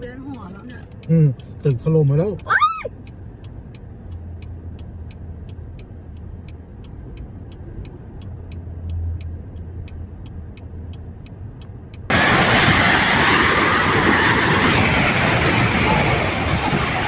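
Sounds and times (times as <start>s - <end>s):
even ticking: 0.0s - 12.2s
steady low rumble: 0.0s - 17.0s.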